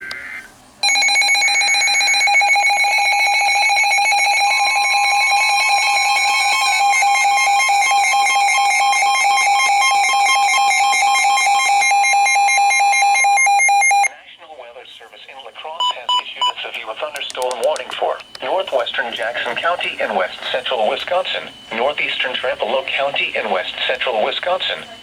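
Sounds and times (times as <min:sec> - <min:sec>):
two-tone alarm: 0:00.8 - 0:14.2.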